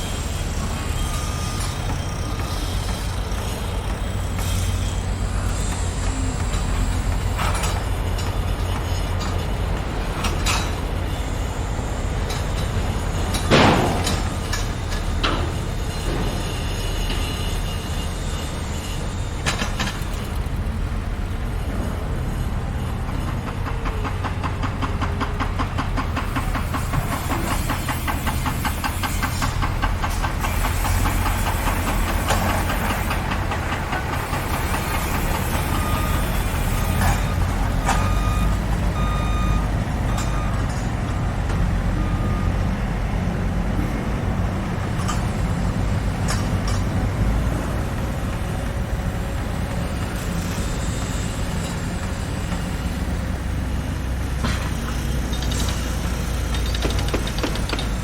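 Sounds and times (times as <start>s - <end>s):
fast mechanical rattle: 0.0s - 38.4s, 47.9s - 58.0s
construction machinery rumbling: 0.0s - 58.0s
short beeps: 37.9s - 40.8s.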